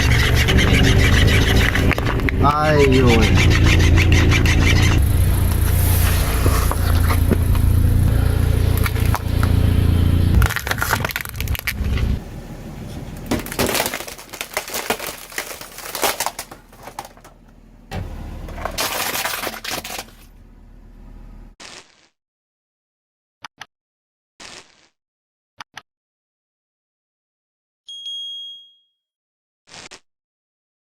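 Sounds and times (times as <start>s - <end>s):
car engine running: 0.0s - 21.6s
tyres crushing objects: 3.0s - 9.6s, 10.3s - 12.2s, 12.9s - 17.4s, 18.0s - 20.3s.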